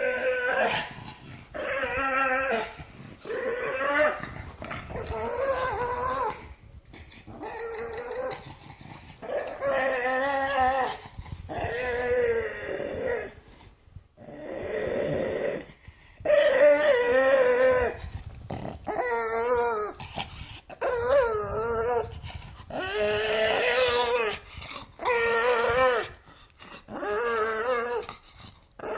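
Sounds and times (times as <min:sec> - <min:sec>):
dog growl-whining: 0:00.0 - 0:13.6, 0:14.2 - 0:28.9.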